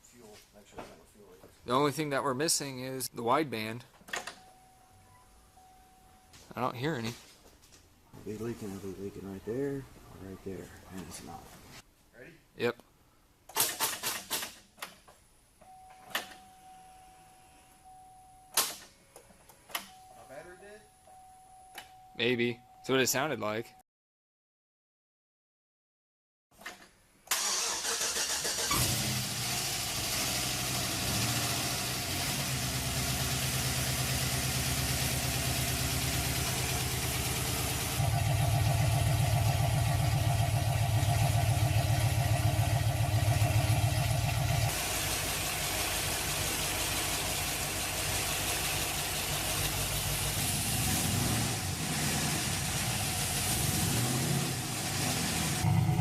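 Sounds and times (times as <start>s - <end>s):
engine cranking: 27.3s - 29.0s.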